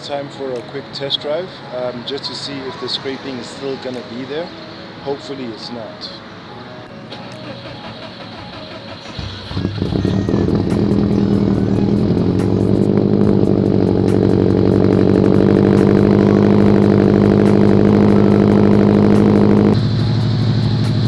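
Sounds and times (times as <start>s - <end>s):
car engine droning while driving: 7.4s - 21.0s.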